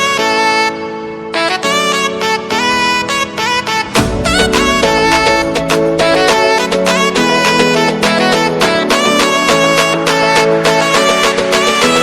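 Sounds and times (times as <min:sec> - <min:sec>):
reedy wind instrument melody: 0:00.0 - 0:12.0
low drone: 0:02.5 - 0:07.7.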